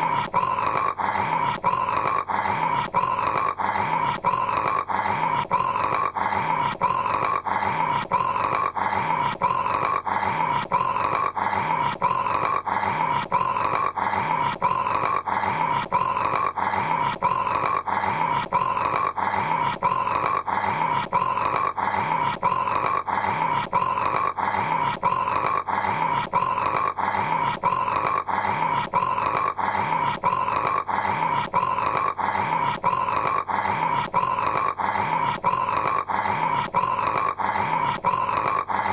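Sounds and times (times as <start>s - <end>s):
man snoring: 0.0s - 38.9s.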